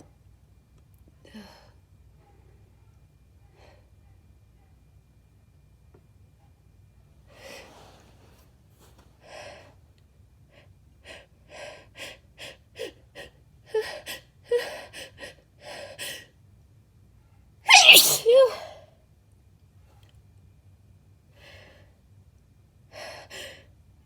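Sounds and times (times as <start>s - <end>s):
woman sneezing: 17.7s - 18.8s.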